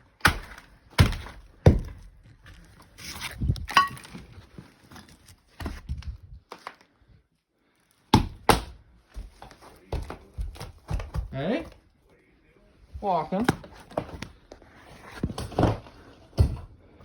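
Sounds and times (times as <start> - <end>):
footsteps on wooden floorboards: 9.1 - 11.8.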